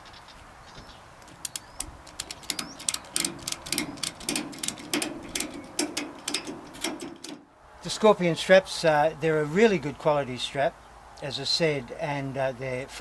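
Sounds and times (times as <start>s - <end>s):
ratchet strap clicking: 1.2s - 7.4s.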